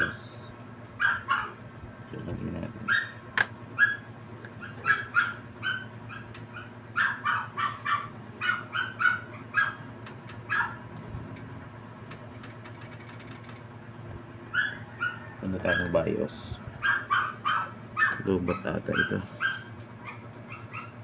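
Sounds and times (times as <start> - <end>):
small dog barking: 1.0 - 1.6, 2.9 - 3.2, 3.8 - 9.9, 10.5 - 10.8, 14.5 - 16.0, 16.8 - 21.0.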